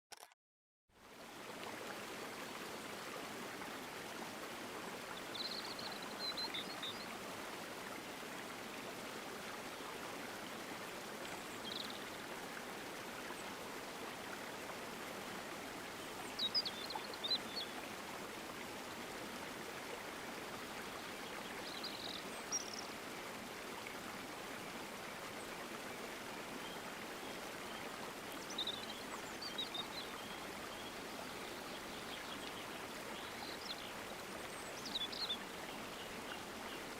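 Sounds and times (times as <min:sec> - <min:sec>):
stream running over rocks: 0:01.0 - 0:36.9.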